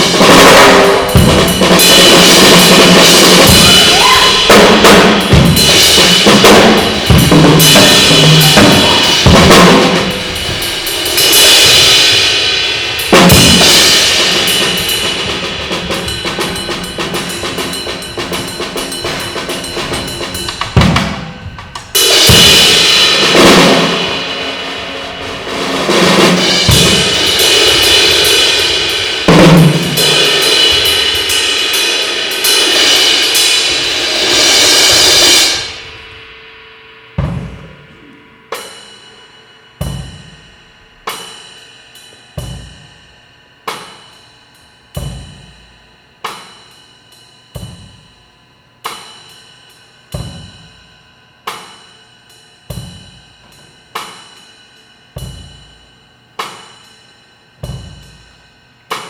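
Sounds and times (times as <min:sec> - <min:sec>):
busy drumming: 0:00.0 - 0:36.4, 0:37.2 - 0:38.8, 0:39.8 - 0:41.4, 0:42.4 - 0:44.2, 0:44.8 - 0:46.8, 0:47.6 - 0:49.4, 0:50.1 - 0:50.9, 0:52.7 - 0:54.4, 0:55.1 - 0:56.8, 0:57.6 - 0:59.0
cymbal crashes: 0:00.0 - 0:59.0
single drum strikes ringing out: 0:57.6 - 0:58.2.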